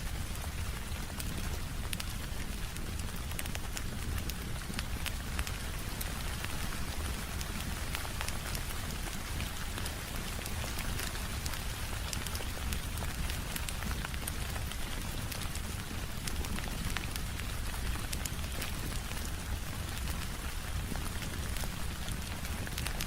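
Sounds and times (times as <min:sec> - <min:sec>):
steady rain: 0:00.0 - 0:23.0
wood fire crackling and popping: 0:00.0 - 0:23.0.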